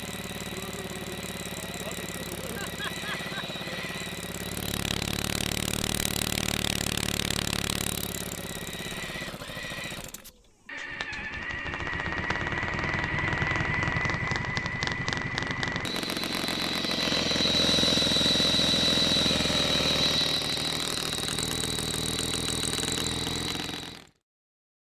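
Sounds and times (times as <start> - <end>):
gearbox and motor whine: 0.0 - 24.1
rapid rattle of gunshots: 11.4 - 24.0.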